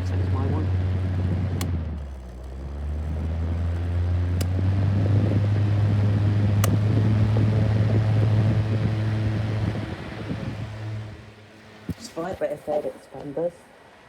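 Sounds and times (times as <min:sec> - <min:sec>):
fan motor humming: 0:00.0 - 0:13.2
sharp clicks: 0:01.5 - 0:04.7, 0:06.6 - 0:06.8.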